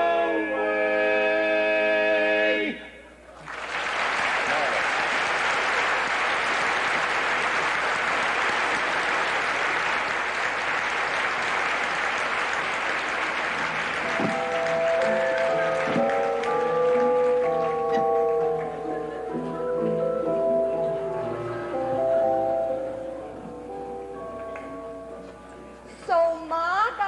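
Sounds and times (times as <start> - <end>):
audience applauding: 3.4 - 19.5
bell-like music notes: 14.0 - 25.3.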